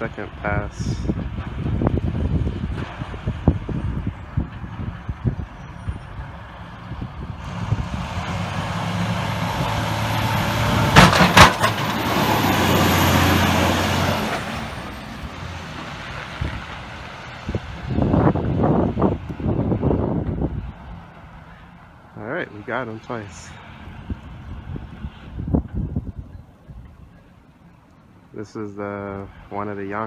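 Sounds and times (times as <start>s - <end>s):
snowplow truck driving past: 0.1s - 28.3s
sharp bangs: 10.8s - 12.3s.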